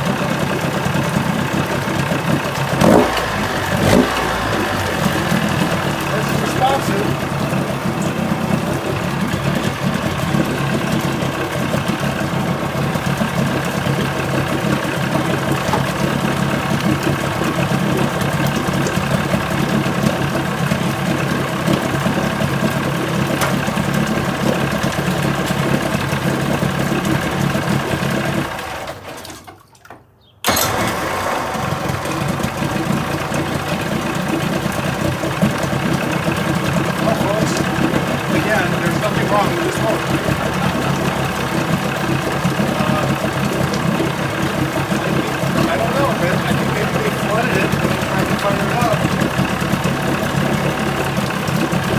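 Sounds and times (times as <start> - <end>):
outboard motor running: 0.0 - 51.9.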